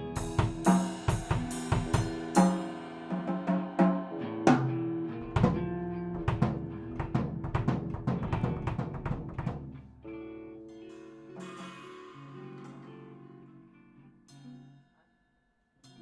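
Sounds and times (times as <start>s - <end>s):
drums: 0.0s - 9.9s, 11.3s - 13.2s
instrumental rock band playing: 0.0s - 14.1s.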